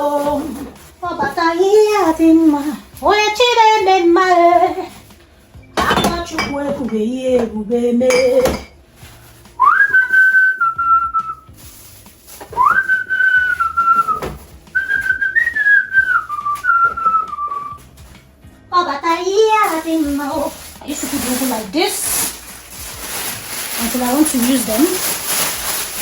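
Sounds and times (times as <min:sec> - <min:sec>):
dishes clinking and knocking: 0:05.7 - 0:08.8
person whistling a slow tune: 0:09.6 - 0:11.5, 0:12.5 - 0:17.9.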